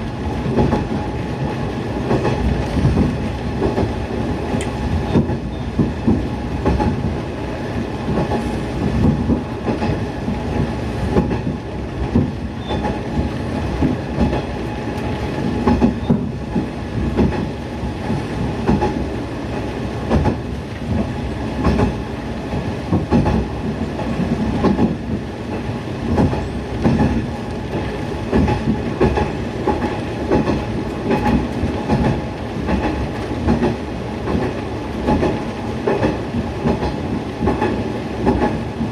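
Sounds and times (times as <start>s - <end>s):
railcar engine drone: 0.0s - 38.9s
wheels clacking over rail joints: 8.1s - 38.9s.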